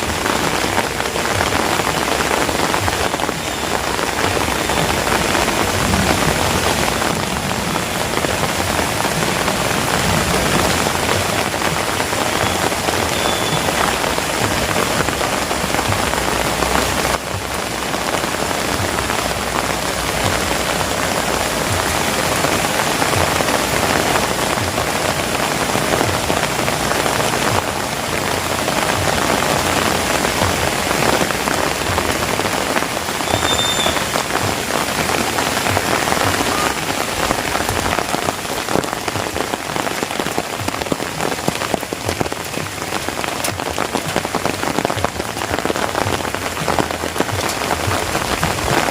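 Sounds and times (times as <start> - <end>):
heavy rain falling: 0.0 - 48.9.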